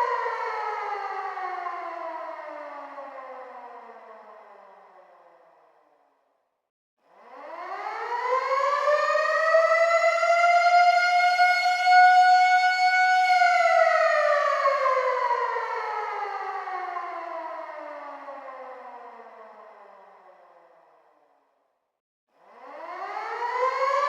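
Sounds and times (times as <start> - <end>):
air raid siren wailing: 7.4 - 20.0, 22.6 - 24.0.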